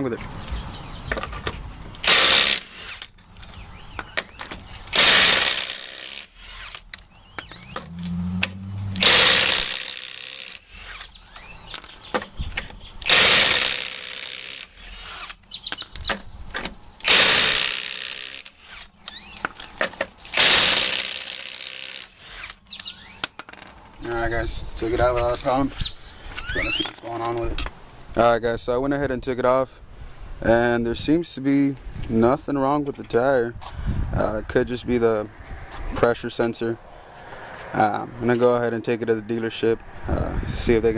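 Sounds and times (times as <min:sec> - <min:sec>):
impact driver bursts: 0:02.0 - 0:03.1, 0:04.1 - 0:07.9, 0:09.0 - 0:11.4, 0:13.0 - 0:15.4, 0:17.0 - 0:19.0, 0:20.3 - 0:23.3.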